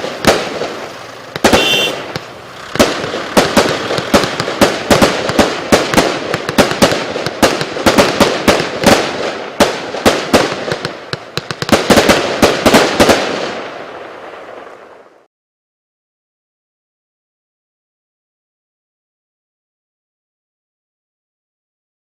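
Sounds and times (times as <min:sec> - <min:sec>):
fireworks barrage bangs: 0:00.0 - 0:15.3.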